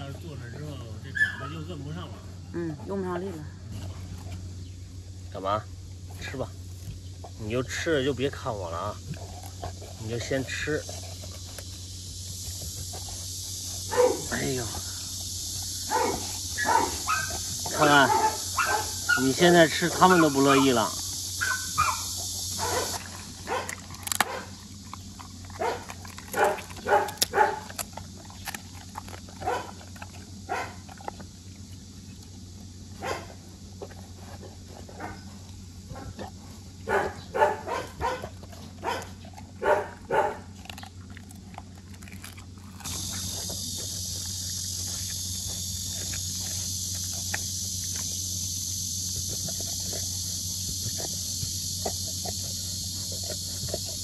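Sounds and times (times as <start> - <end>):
dog crunching frozen meat and bone: 3.6 - 54.0
steady hiss: 9.9 - 29.2.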